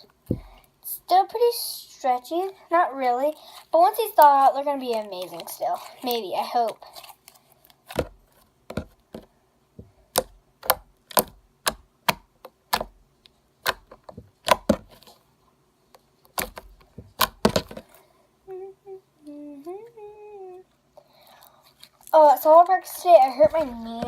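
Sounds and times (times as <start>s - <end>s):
slime squishing with clicks and pops: 10.1s - 13.0s, 13.6s - 15.1s, 16.3s - 17.8s.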